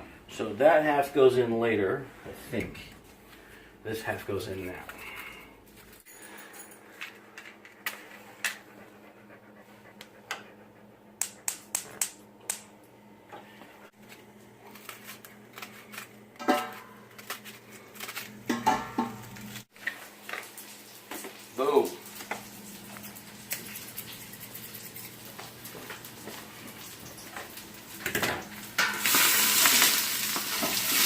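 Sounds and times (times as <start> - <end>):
kitchen clicks and knocks: 16.4 - 17.0, 18.5 - 19.4.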